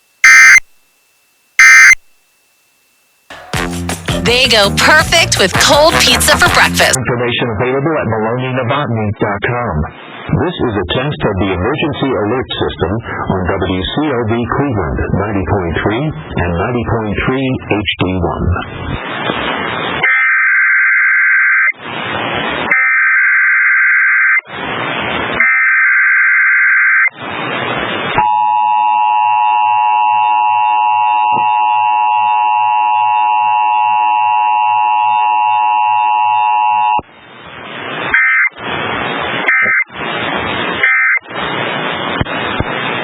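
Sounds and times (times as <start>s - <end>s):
radio hiss: 0.0s - 7.2s, 8.6s - 20.2s, 21.6s - 22.9s, 24.4s - 25.5s, 27.0s - 28.4s, 35.1s - 43.0s
screeching data bursts: 0.2s - 0.6s
two-tone attention signal: 0.2s - 0.6s, 1.6s - 2.0s.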